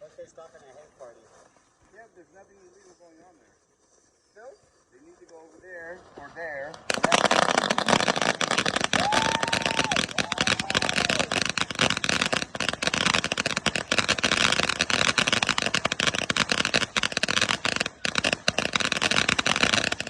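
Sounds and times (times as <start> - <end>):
firework fountain crackling: 4.5 - 20.0.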